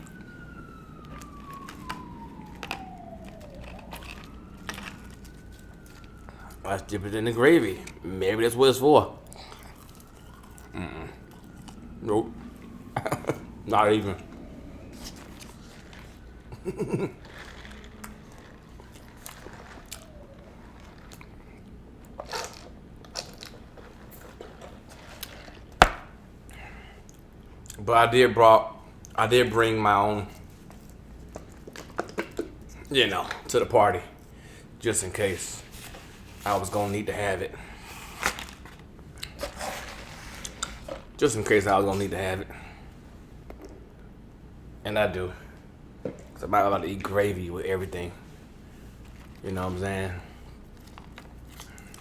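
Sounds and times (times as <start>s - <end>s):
soft crunches: 0.0s - 8.0s, 9.2s - 27.8s, 35.1s - 42.9s, 47.9s - 52.0s
emergency vehicle siren wailing: 0.0s - 52.0s
person chewing fried chicken: 1.0s - 6.6s, 9.1s - 13.6s, 14.2s - 25.7s, 37.6s - 41.2s, 50.3s - 52.0s.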